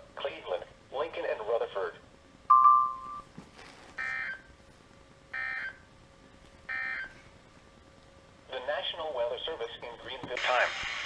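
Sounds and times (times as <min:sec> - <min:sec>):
short single-pitch beep: 0:02.5 - 0:03.2.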